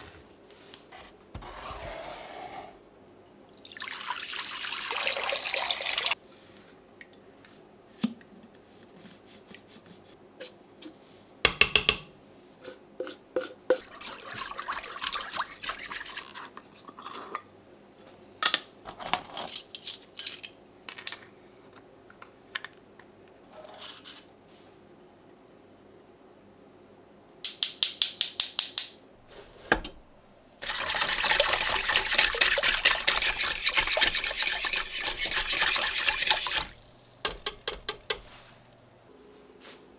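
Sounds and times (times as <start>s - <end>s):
faucet running: 3.6s - 6.2s, 30.6s - 39.0s
scrubbing dishes: 13.7s - 16.5s, 29.2s - 39.0s
dishes and utensils clinking: 27.5s - 38.7s.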